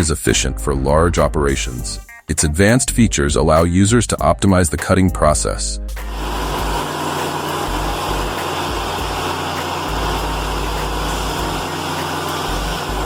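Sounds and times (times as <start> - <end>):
band sawmill running: 6.0 - 13.0
engine hum: 6.0 - 13.0.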